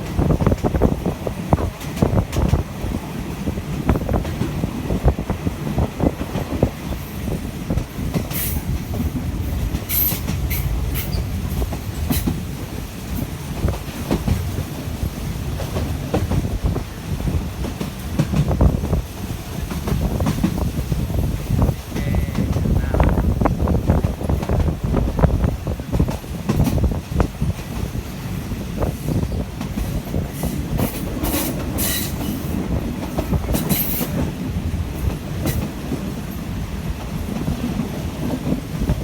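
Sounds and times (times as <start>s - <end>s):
train rumbling on rails: 0.0s - 39.0s.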